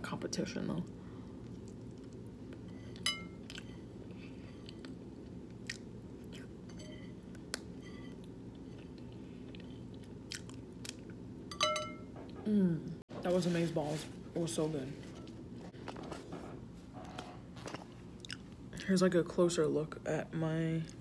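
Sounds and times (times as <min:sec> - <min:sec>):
person chewing: 0:01.3 - 0:06.6, 0:07.2 - 0:11.2, 0:17.6 - 0:18.6.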